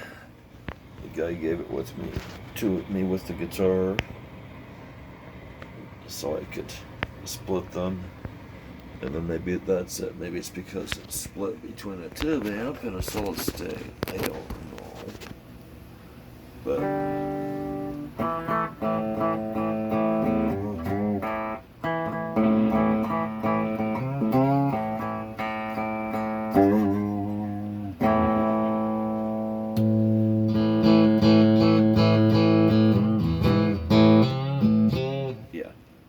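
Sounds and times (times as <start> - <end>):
electric guitar playing: 16.6 - 35.6.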